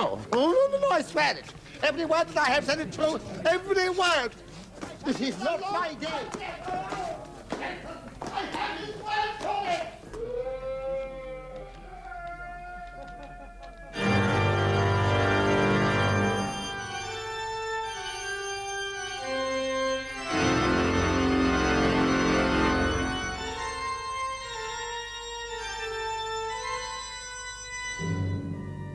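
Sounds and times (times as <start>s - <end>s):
organ playing sustained chords: 13.6s - 28.9s.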